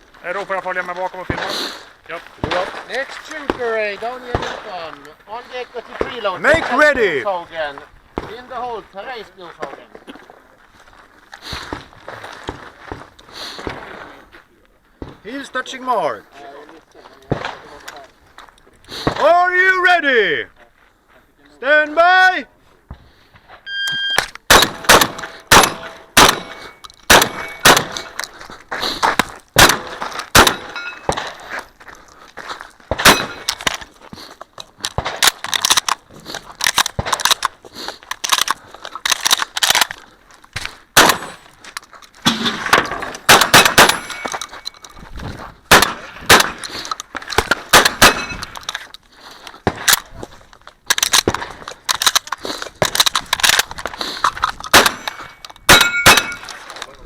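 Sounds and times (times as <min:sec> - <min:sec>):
shotgun shots: 0:01.3 - 0:01.7, 0:02.4 - 0:04.9, 0:24.4 - 0:28.1, 0:29.6 - 0:31.4, 0:32.9 - 0:33.6, 0:41.0 - 0:41.4, 0:42.2 - 0:44.4, 0:45.7 - 0:46.8, 0:47.4 - 0:48.6, 0:54.7 - 0:56.5
metallic clangs and clatter: 0:30.5 - 0:31.3, 0:42.2 - 0:45.0, 0:54.7 - 0:56.9.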